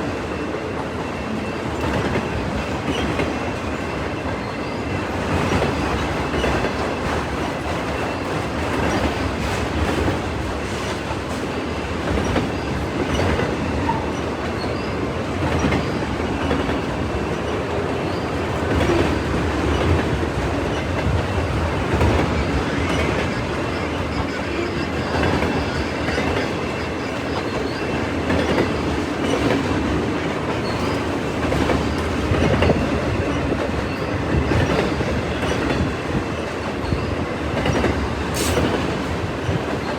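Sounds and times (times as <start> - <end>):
freight train rumbling past: 0.0 - 39.9.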